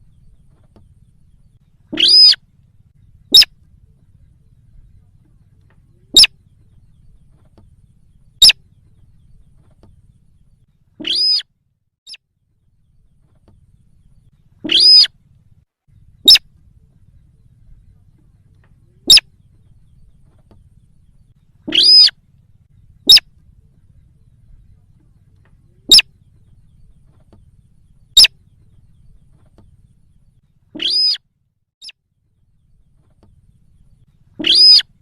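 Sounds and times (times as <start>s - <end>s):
longer fuller bird calls: 0.0s - 11.5s, 12.1s - 31.2s, 31.8s - 35.0s
short sharp bird lure calls: 1.8s - 2.4s, 3.3s - 3.6s, 6.0s - 6.4s, 8.3s - 8.6s, 10.9s - 11.5s, 14.6s - 15.2s, 16.2s - 16.5s, 19.0s - 19.4s, 21.6s - 22.2s, 23.0s - 23.3s, 25.8s - 26.1s, 28.1s - 28.4s, 30.7s - 31.2s, 34.3s - 35.0s.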